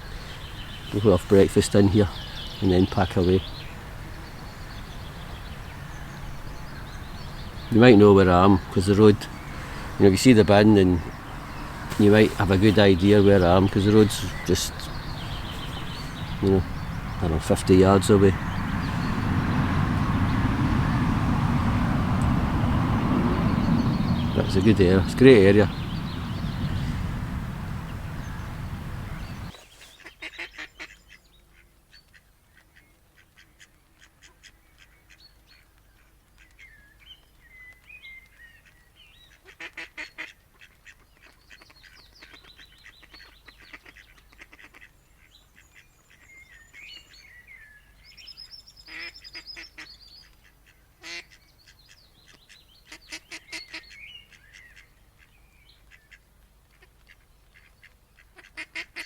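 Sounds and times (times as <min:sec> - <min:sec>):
small birds warbling: 0:00.0 - 0:30.1
steady rush of noise: 0:05.2 - 0:29.5
waterfowl honking: 0:05.2 - 0:29.5.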